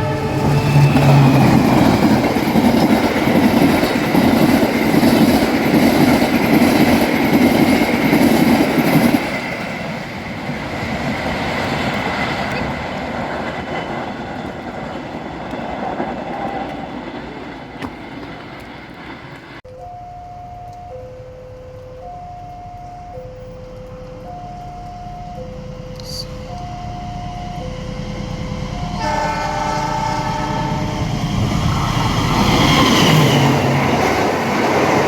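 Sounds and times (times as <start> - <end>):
train wheels clattering on rails: 0.0 - 19.6.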